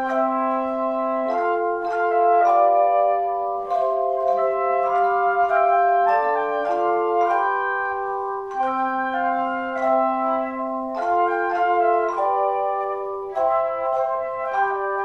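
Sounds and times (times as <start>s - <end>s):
organ playing slow chords: 0.0s - 15.0s.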